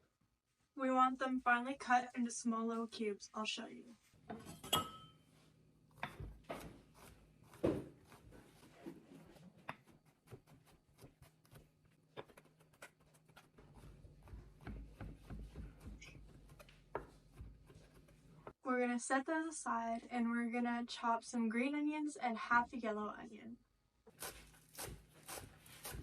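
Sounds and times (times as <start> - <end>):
knife chopping on cutting board: 6.0 - 9.0, 9.6 - 18.6, 24.1 - 26.0.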